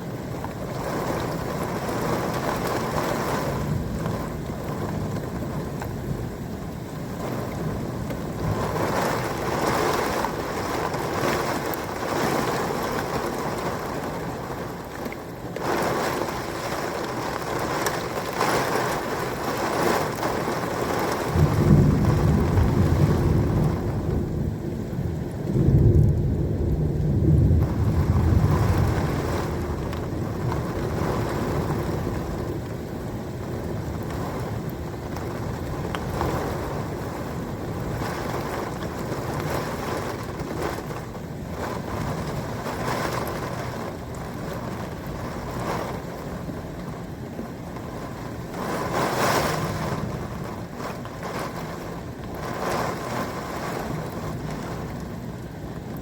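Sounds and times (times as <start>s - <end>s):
steady rain: 0.0s - 56.0s
thunder rumbling: 0.0s - 56.0s.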